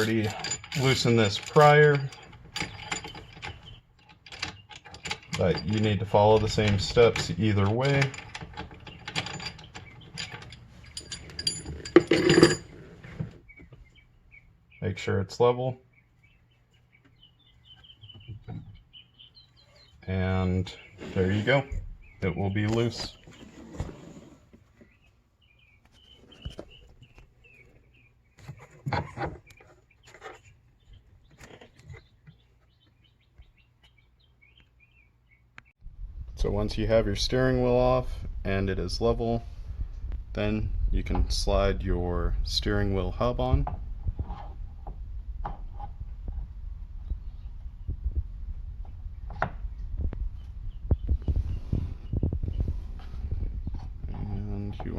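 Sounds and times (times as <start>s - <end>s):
metal clatter: 0.0s - 13.2s
small birds chirping: 0.8s - 11.3s, 12.6s - 35.8s, 45.6s - 54.9s.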